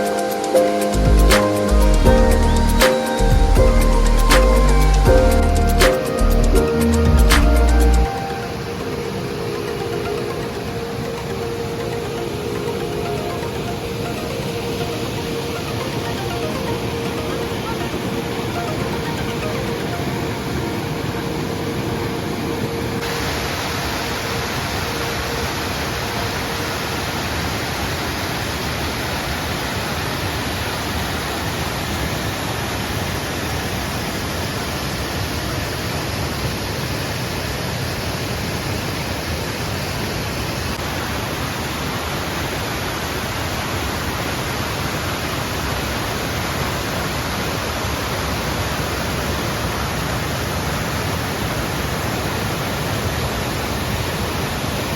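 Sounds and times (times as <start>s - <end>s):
waterfall rushing: 0.0s - 54.9s.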